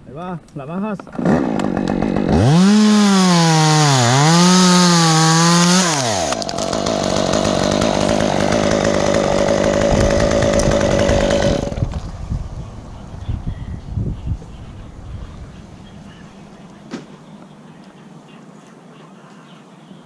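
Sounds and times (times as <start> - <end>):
chainsaw at full throttle: 1.1 - 12.0
rough steady saw noise: 1.1 - 12.0.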